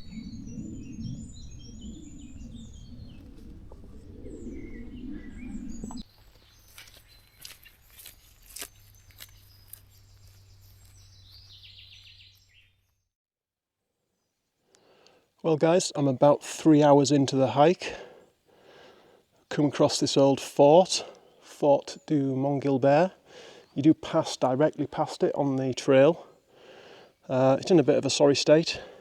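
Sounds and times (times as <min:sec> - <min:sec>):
low rumble of wind: 0:00.0 - 0:06.1
small birds chirping and singing: 0:00.0 - 0:13.0.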